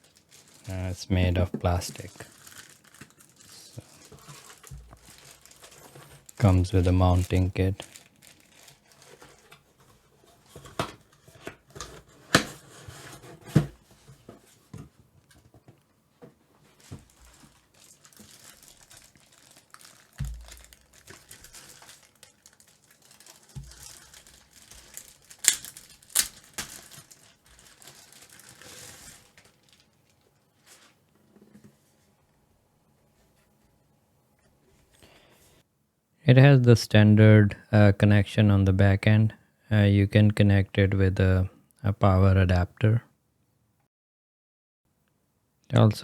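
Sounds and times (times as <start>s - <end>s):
plastic wrapping crinkling: 0.0s - 14.7s, 16.5s - 31.6s.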